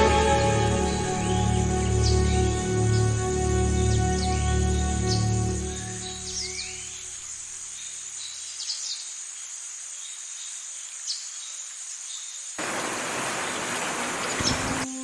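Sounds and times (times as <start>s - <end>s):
heavy rain hissing: 0.0s - 2.0s, 12.6s - 15.0s
bird chirps: 12.6s - 14.9s
insects chirring: 12.6s - 14.9s.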